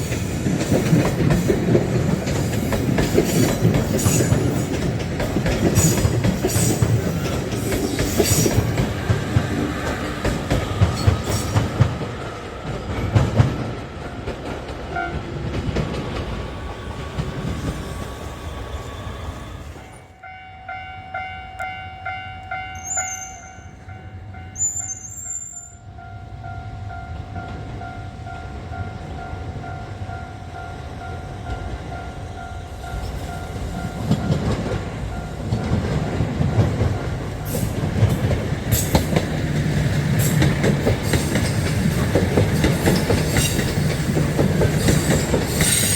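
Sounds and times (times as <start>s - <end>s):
train wheels clacking: 0.0s - 18.3s, 30.6s - 45.9s
train wheels on rails: 0.0s - 45.9s.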